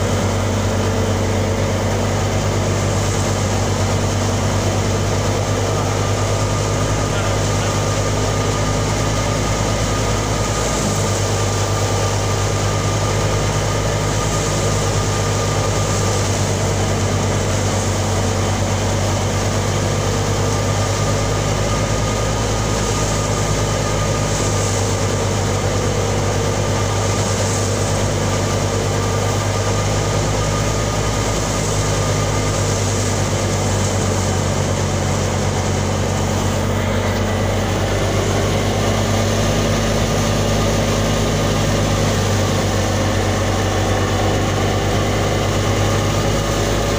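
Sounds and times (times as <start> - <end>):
thin steady whine: 0.0 - 46.9
thresher engine hum: 0.0 - 46.9
thresher machine rattling rush: 0.0 - 46.9.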